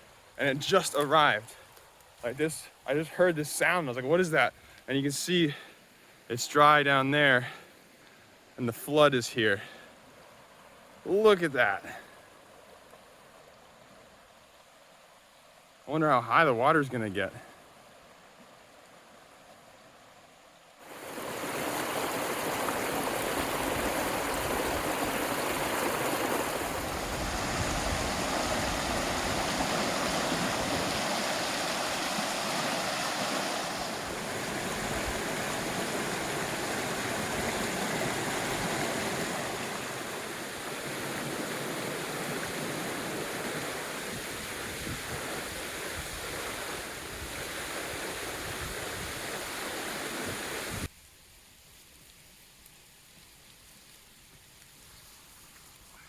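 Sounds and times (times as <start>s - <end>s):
water rushing down a creek: 8.5s - 56.0s.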